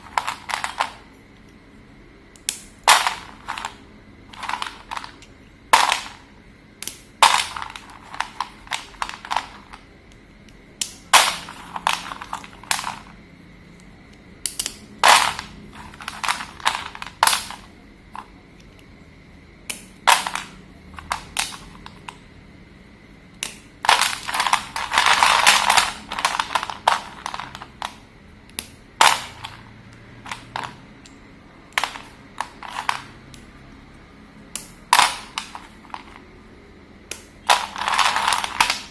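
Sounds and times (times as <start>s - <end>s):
slate pencils snapping: 2.3s - 6.2s, 6.8s - 13.1s, 13.7s - 18.9s, 23.3s - 33.6s, 34.5s - 36.2s, 37.1s - 38.9s.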